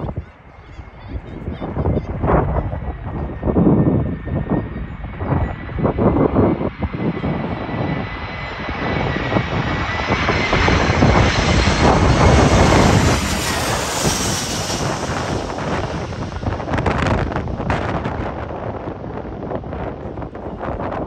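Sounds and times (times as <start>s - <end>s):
jet airliner engines passing: 0.0s - 21.0s
wind buffeting microphone: 0.0s - 21.0s.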